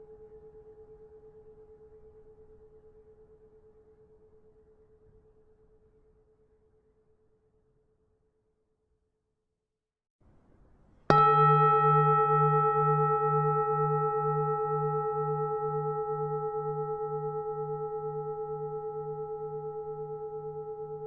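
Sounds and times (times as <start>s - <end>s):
temple bell ringing: 11.1s - 21.0s.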